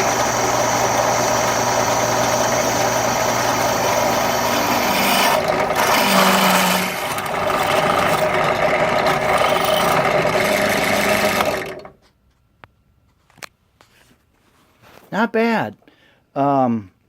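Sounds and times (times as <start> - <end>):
electric drill cutting metal: 0.0 - 11.9.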